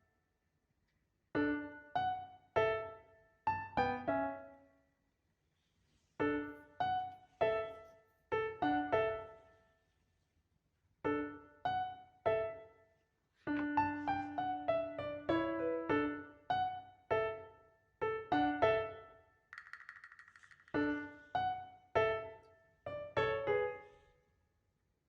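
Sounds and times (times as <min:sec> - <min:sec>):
electric piano tune: 0:13.5 - 0:19.1.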